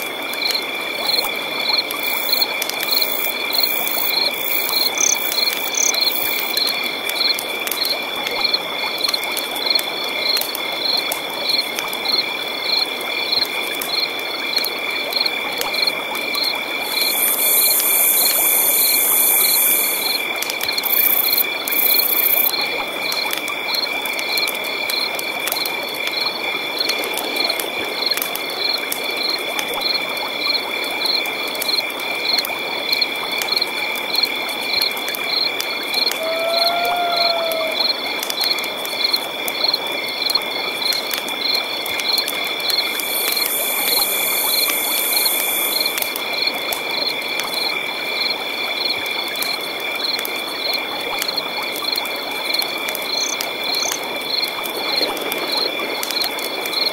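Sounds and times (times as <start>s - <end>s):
cricket chirping: 0.0s - 56.9s
high insect trills: 0.4s - 7.4s, 15.2s - 23.8s, 34.8s - 39.8s, 40.8s - 46.1s
frog calls: 1.1s - 6.7s, 16.4s - 22.6s, 36.0s - 38.0s, 42.7s - 46.0s.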